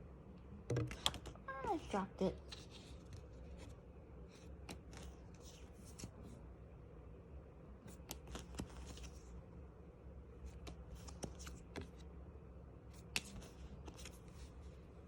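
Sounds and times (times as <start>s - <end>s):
rustling of cards and packaging: 0.9s - 6.4s, 7.9s - 9.4s, 10.4s - 12.1s, 12.9s - 14.9s.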